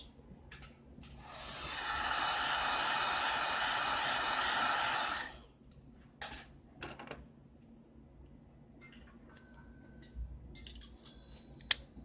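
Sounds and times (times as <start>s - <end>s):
hot-air gun blowing: 1.2s - 5.5s.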